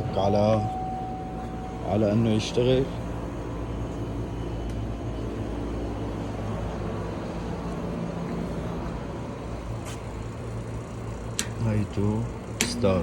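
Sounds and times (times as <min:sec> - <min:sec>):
low mechanical drone: 0:00.0 - 0:13.0.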